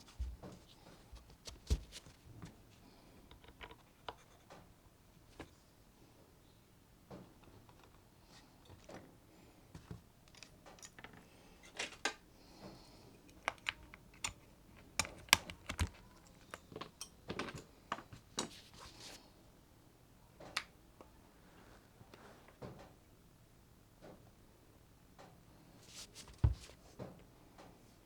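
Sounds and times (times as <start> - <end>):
mechanical keyboard keystrokes: 13.4 - 16.1.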